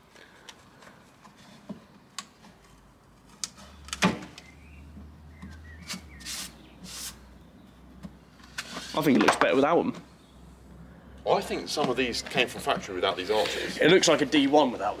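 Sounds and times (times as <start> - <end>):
short rubbing scrapes: 5.8 - 7.3.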